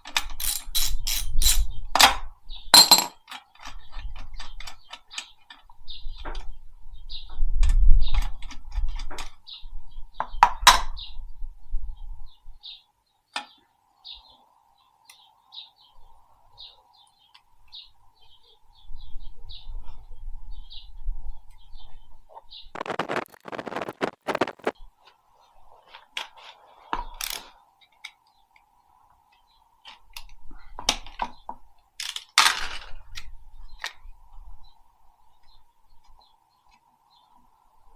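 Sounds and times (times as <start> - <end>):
sharp knocks and clinks: 2.8 - 3.2
small bird chirping: 21.6 - 24.7.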